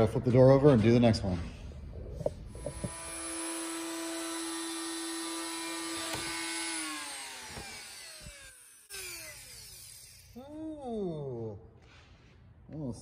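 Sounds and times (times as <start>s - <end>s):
power tool motor whining: 2.5s - 10.4s.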